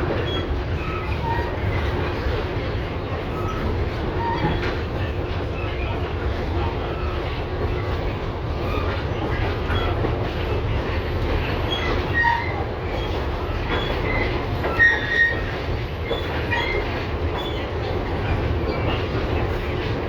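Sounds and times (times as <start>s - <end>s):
tram rumbling on rails: 0.0s - 20.0s
high-pitched wheel squeals: 11.7s - 15.5s.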